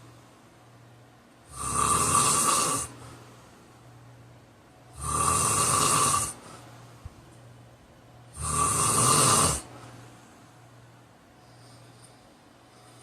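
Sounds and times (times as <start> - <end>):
quiet breathing: 0.0 - 0.6, 2.3 - 3.9, 6.0 - 7.2, 9.4 - 13.0
man snoring: 1.5 - 3.0, 4.9 - 6.4, 8.3 - 9.7.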